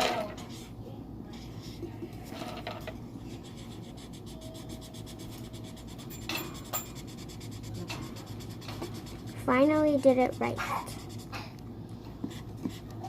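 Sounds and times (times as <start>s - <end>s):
pen scratching on paper: 3.3s - 11.3s.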